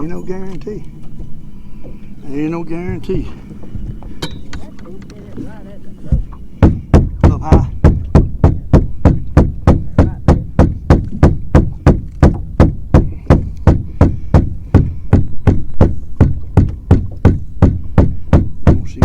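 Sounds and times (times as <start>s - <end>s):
rapid regular knocking: 0.1s - 5.2s, 6.0s - 19.0s.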